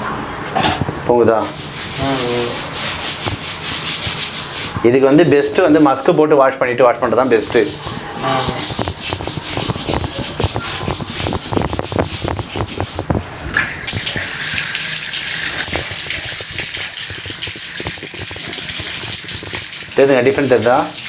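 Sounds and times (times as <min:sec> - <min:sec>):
scrub pad scrubbing tiles: 0:01.3 - 0:06.2, 0:07.0 - 0:13.1, 0:13.9 - 0:21.0
water running: 0:07.0 - 0:21.0.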